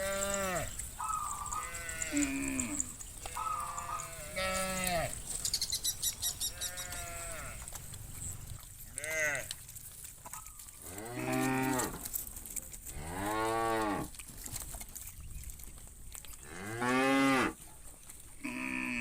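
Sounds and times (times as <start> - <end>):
cattle mooing: 0.0 - 5.2, 6.4 - 9.5, 10.9 - 12.0.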